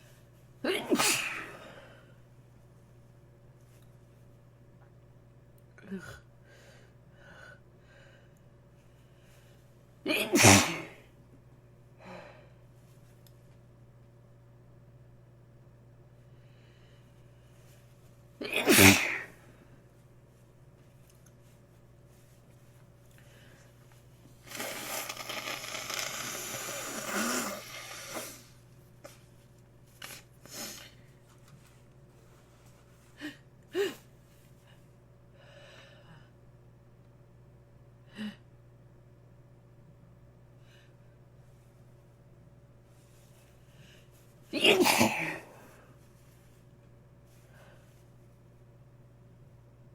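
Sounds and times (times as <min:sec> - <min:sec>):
person sneezing: 0:00.6 - 0:01.9, 0:10.1 - 0:11.1, 0:18.4 - 0:19.5, 0:24.5 - 0:28.6, 0:44.6 - 0:45.8
air forced through blocked nose: 0:24.4 - 0:28.6.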